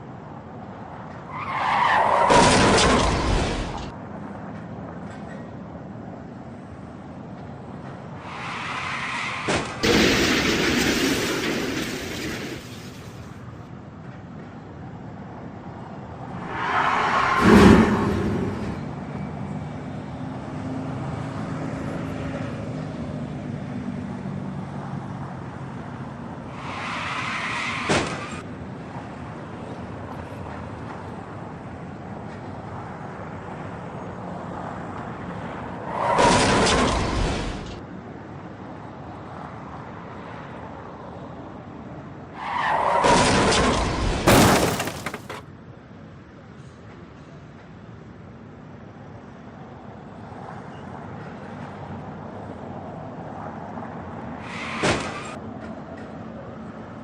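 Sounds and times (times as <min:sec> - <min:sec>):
loud car crash: 0:01.9 - 0:03.9, 0:09.3 - 0:13.2, 0:16.3 - 0:19.0, 0:36.1 - 0:37.6, 0:42.9 - 0:45.4
car collision with breaking glass: 0:44.3 - 0:45.4
tyres screeching: 0:44.3 - 0:45.4.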